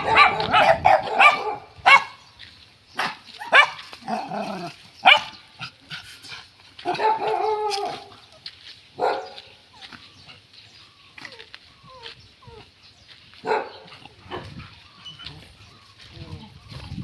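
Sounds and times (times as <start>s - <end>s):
dogs barking: 0.0s - 2.3s, 3.0s - 6.1s, 6.8s - 15.8s
dog whining: 11.2s - 12.7s.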